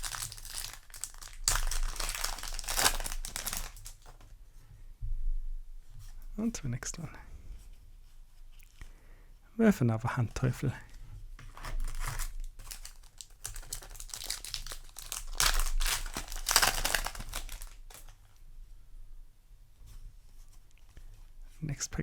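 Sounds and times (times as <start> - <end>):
foil wrapper crinkling and tearing: 0.0 - 4.2, 11.4 - 18.2.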